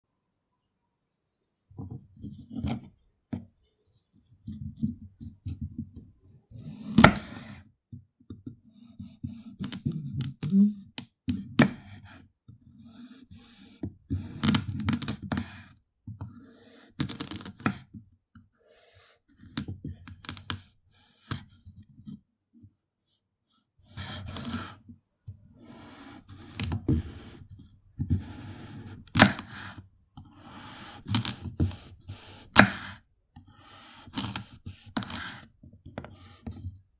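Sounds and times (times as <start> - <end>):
knife cutting raw carrot: 6.6 - 7.7, 23.9 - 24.8, 25.6 - 36.6.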